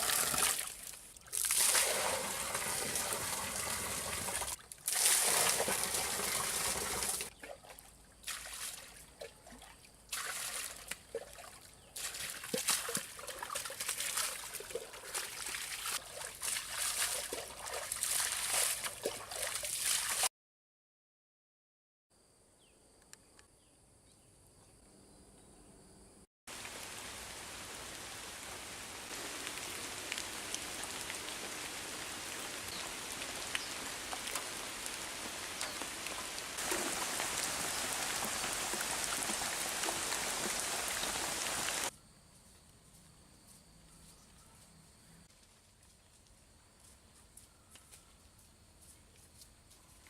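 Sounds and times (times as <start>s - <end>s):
falling water hiss: 0.0s - 0.7s, 1.4s - 7.3s, 26.5s - 41.9s.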